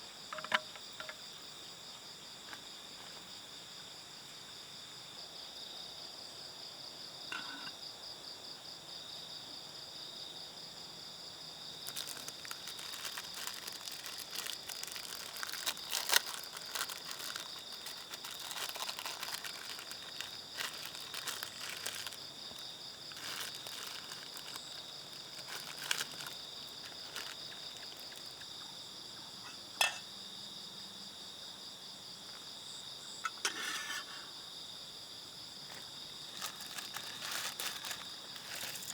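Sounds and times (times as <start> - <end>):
night insects chirring: 0.0 - 38.9
crinkling with sharp clicks: 11.8 - 28.5, 35.7 - 38.9.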